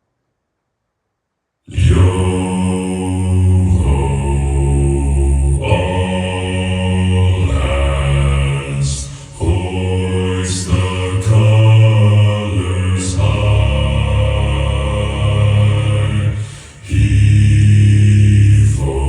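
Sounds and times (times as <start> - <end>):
deep voices chanting: 1.7 - 19.0
low drone: 1.7 - 19.0.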